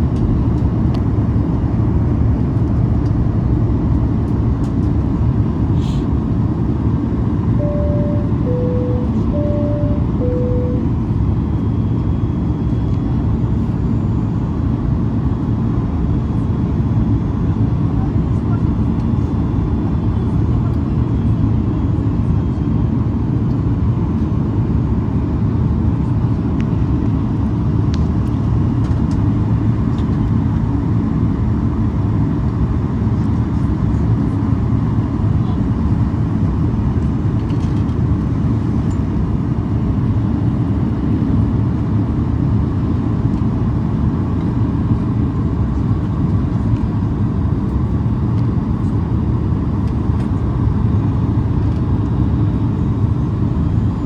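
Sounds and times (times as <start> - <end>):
airliner cabin rumble: 0.1 - 12.2.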